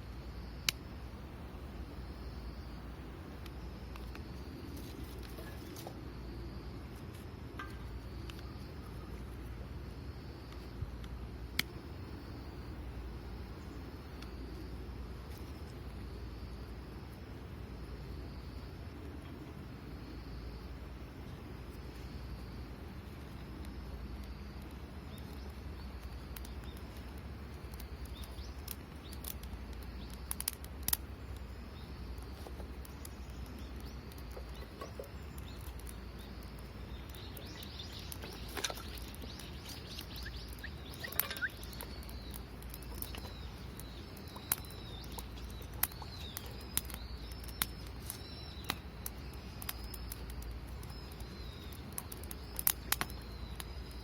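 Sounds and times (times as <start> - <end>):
small birds chirping: 20.0 - 54.0
sharp clicks: 35.4 - 53.2.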